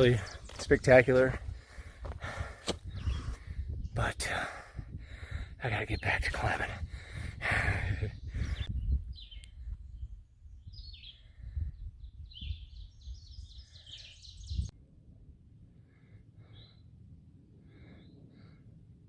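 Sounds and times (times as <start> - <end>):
songbird singing: 0.0 - 1.6, 2.7 - 4.5, 5.6 - 6.8, 7.7 - 14.8.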